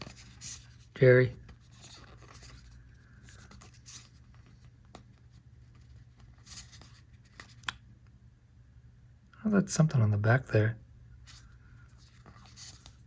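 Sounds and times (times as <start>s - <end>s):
trading cards being flipped: 1.4s - 7.8s.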